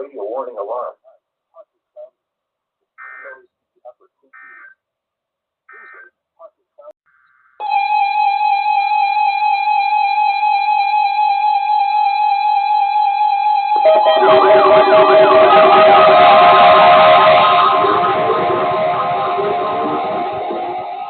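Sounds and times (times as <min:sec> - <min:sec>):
music with sliding notes: 0:13.8 - 0:21.0
steady electronic alert tone: 0:13.8 - 0:21.0.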